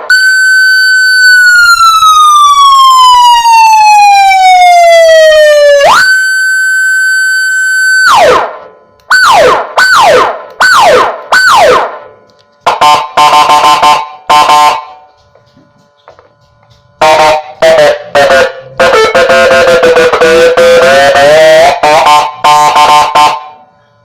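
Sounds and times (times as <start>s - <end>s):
electronic siren: 0.0s - 15.2s, 17.0s - 24.0s.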